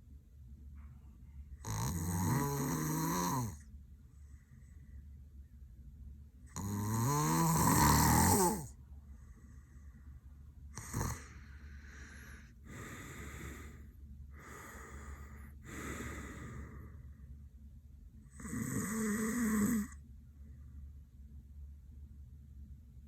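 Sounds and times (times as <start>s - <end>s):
man snoring: 1.6s - 3.6s, 6.6s - 8.7s, 10.8s - 16.9s, 18.3s - 20.0s
man breathing noisily: 10.8s - 17.2s.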